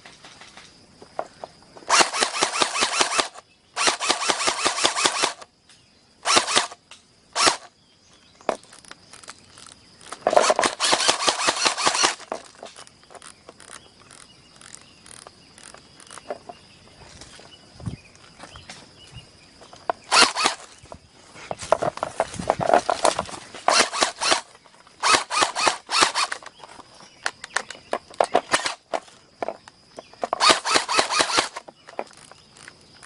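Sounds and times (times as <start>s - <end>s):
airsoft guns firing bursts: 1.9s - 5.4s, 6.2s - 6.8s, 7.4s - 7.7s, 10.3s - 12.3s, 20.1s - 20.6s, 23.7s - 26.4s, 28.4s - 28.8s, 30.4s - 31.6s.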